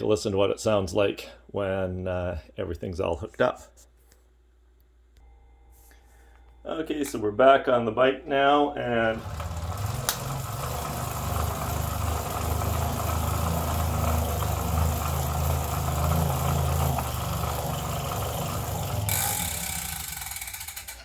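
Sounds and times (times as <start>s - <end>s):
bike trainer humming: 8.9s - 21.0s
tyre hissing on roller: 9.0s - 19.4s.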